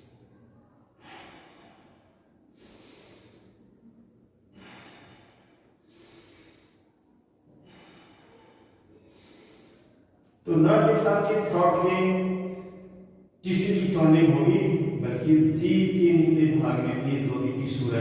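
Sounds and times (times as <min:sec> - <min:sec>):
person breathing slowly: 0:01.0 - 0:10.4, 0:12.3 - 0:13.2.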